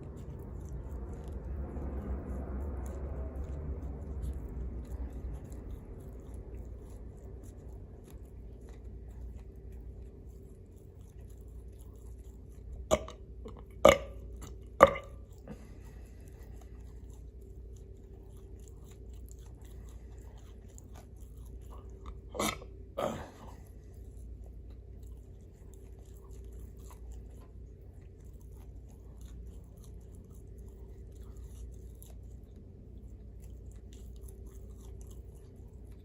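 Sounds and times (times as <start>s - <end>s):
person chewing food: 0.0s - 36.0s
loud sharp mouth sounds: 22.3s - 23.5s.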